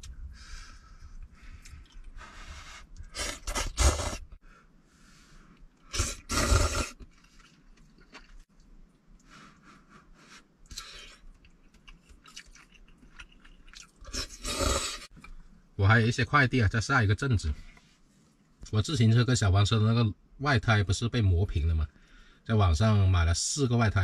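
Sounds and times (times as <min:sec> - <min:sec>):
person chewing noodles: 0:02.8 - 0:04.2, 0:05.6 - 0:15.4.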